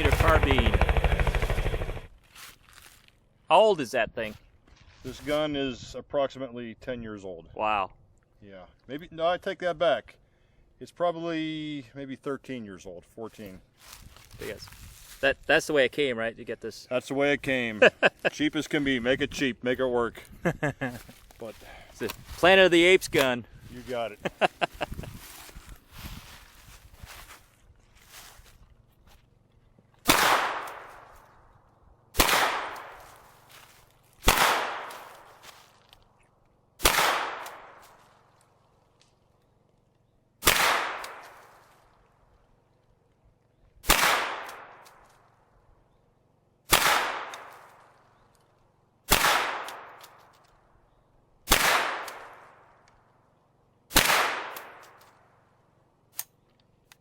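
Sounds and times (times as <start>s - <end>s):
gunshots echoing: 30.0s - 31.1s, 32.2s - 33.0s, 34.2s - 35.0s, 36.8s - 37.8s, 40.4s - 41.4s, 43.8s - 44.8s, 46.7s - 47.6s, 49.1s - 50.0s, 51.5s - 52.5s, 53.9s - 54.9s.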